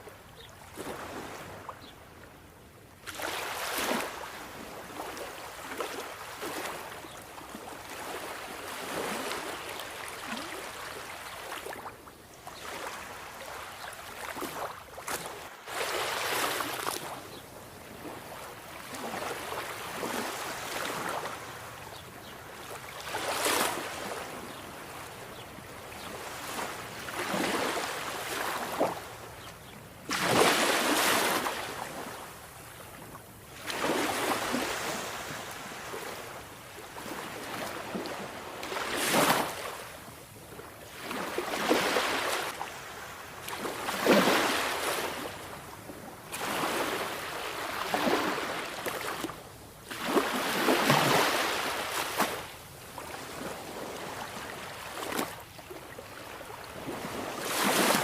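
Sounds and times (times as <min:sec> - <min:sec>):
sea waves breaking ashore: 0:12.6 - 0:17.2, 0:30.0 - 0:32.3, 0:33.6 - 0:39.9, 0:40.9 - 0:45.6, 0:46.3 - 0:58.0.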